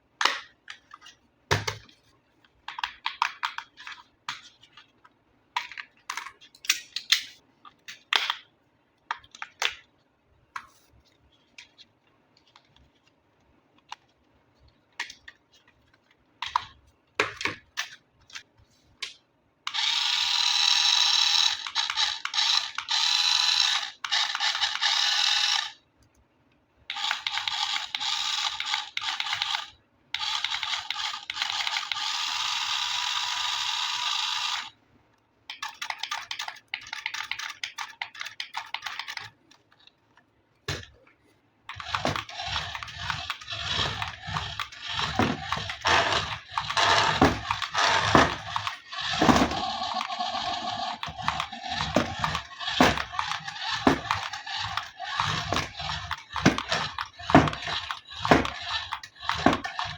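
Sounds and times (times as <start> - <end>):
toy car motor whirring: 19.7 - 25.8, 26.9 - 34.8, 41.7 - 59.9.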